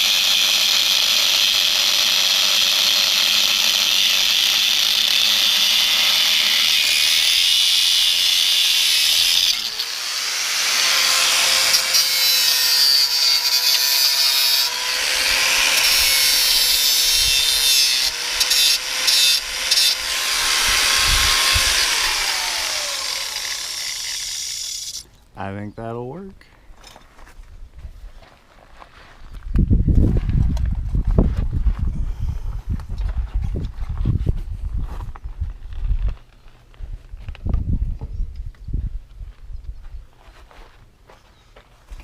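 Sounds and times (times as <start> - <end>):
power tool grinding metal: 0.0 - 25.0
motor whine: 14.6 - 25.0.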